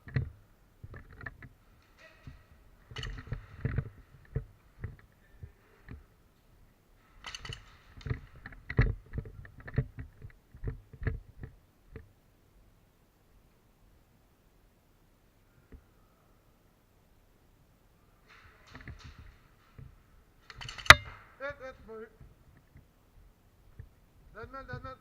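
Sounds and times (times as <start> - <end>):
thumps and knocks: 0.0 - 6.1, 7.2 - 12.1, 18.3 - 21.4
rustling: 0.0 - 12.2, 17.9 - 25.0.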